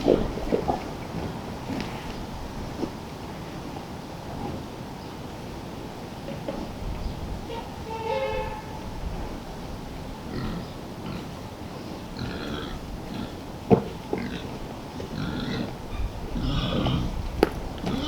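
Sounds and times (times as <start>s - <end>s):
pigs grunting: 0.0s - 2.4s, 10.2s - 18.0s.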